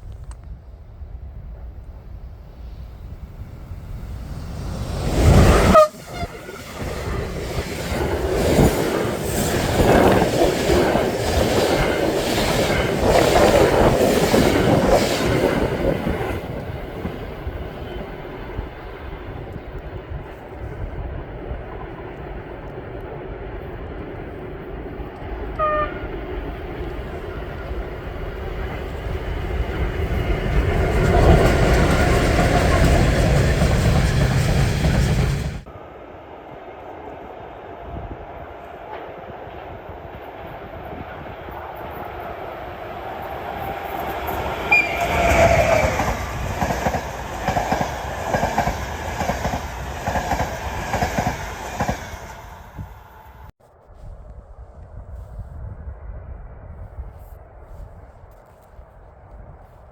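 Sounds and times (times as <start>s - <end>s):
train rumble: 0.0s - 59.9s
train horn toot: 5.5s - 6.8s, 25.5s - 26.3s, 44.7s - 46.3s.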